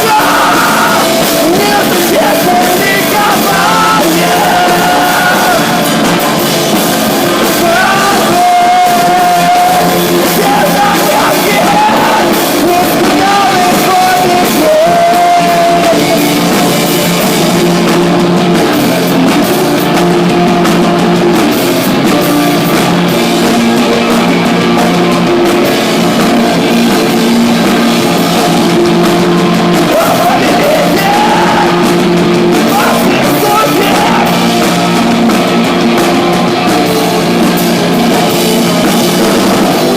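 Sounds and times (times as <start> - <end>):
person singing: 0.0 - 6.1, 7.2 - 16.8, 27.8 - 35.3
rock band playing live: 0.0 - 39.9.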